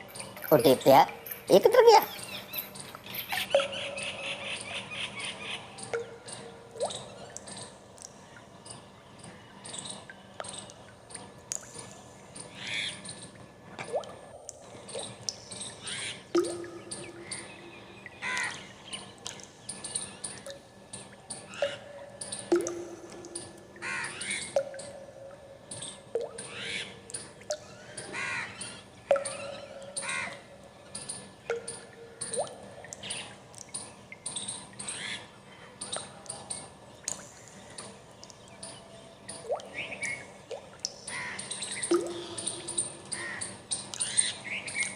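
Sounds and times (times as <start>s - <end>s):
birds chirping and calling: 0.1s - 7.3s, 14.9s - 19.1s, 41.1s - 44.9s
long bird calls: 41.0s - 44.9s.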